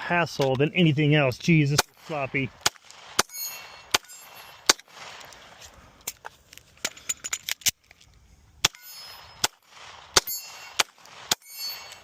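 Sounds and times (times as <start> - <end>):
gunshots: 1.6 - 5.3, 8.6 - 12.0.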